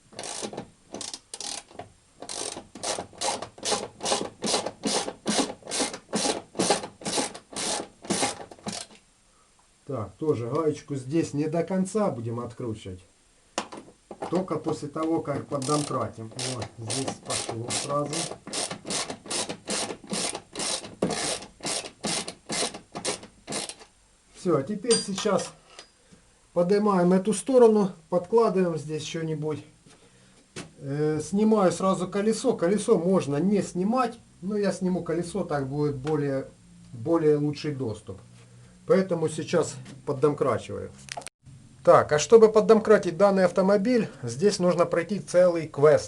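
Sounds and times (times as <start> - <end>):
ratchet wrench clicking: 0.2 - 9.0, 15.6 - 23.8.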